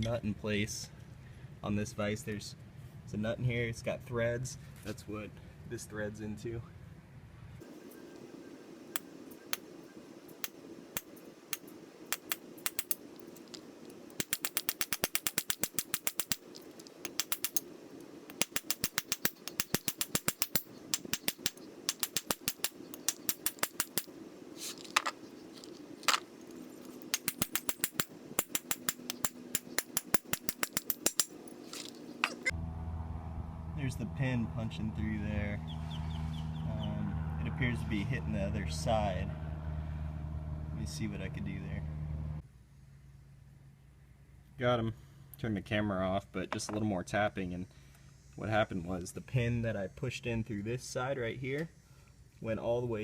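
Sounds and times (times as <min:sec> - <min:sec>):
hammer striking metal punch: 0:10.4 - 0:13.6, 0:14.2 - 0:17.6, 0:18.3 - 0:24.1, 0:27.0 - 0:32.5.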